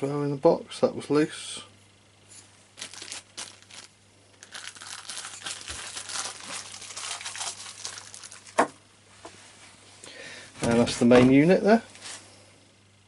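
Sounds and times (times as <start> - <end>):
packaging crinkling and rustling: 2.8 - 8.8.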